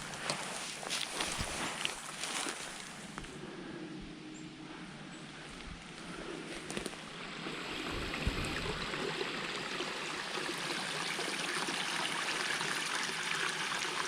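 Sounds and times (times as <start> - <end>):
stream running over rocks: 6.9 - 14.0.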